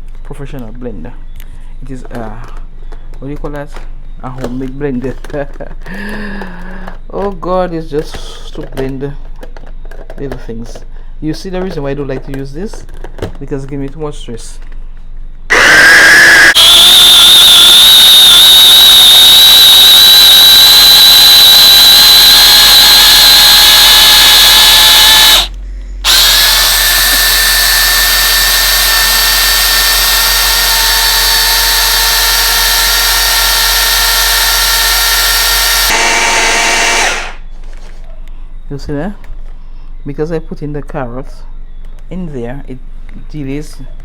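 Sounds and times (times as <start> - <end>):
blender motor whining: 15.5 - 37.5.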